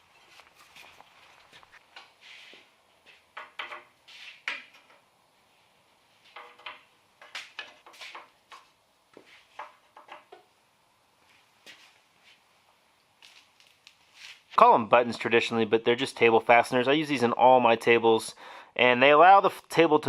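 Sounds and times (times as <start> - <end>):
wooden knocks and clicks: 3.3 - 5.1, 6.3 - 8.7, 9.6 - 10.5.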